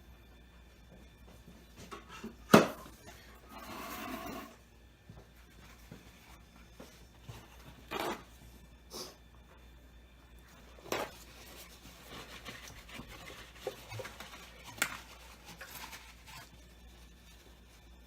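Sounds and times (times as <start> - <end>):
scraping or rubbing: 3.5 - 4.6.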